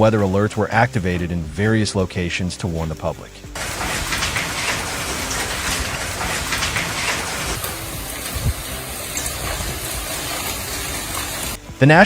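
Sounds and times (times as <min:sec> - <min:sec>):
heavy rain: 0:03.6 - 0:11.6.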